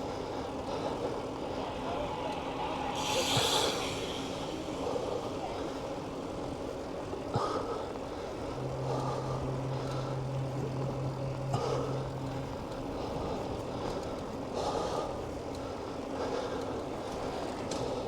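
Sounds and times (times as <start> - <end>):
traffic road noise: 0.0 - 16.1
low engine hum: 3.7 - 18.0.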